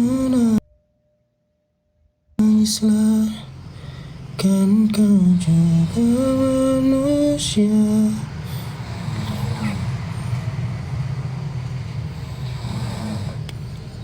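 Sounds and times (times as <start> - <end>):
person singing: 0.0 - 0.6, 2.4 - 3.6, 4.4 - 8.8
low rumble: 2.4 - 14.0.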